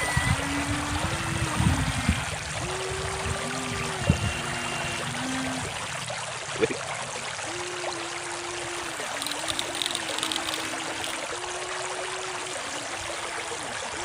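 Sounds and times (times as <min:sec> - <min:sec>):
toy electric motor humming: 0:00.0 - 0:06.0, 0:07.5 - 0:13.4
river water running: 0:00.0 - 0:14.0
small clicks: 0:09.0 - 0:11.2.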